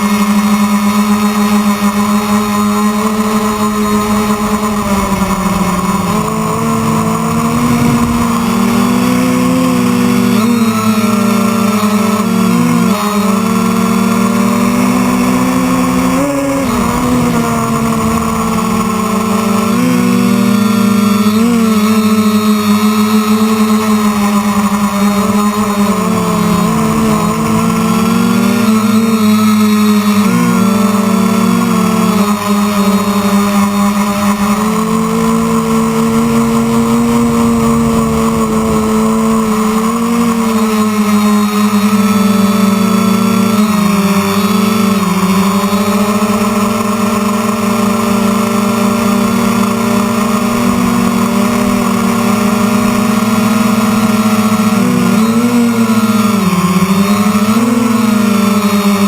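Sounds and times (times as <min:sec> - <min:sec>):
drone propellers whirring: 0:00.0 - 0:59.0.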